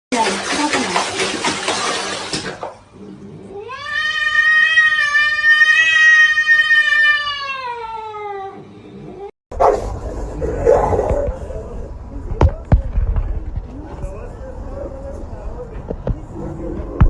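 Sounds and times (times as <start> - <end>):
cat meowing: 3.5 - 9.3.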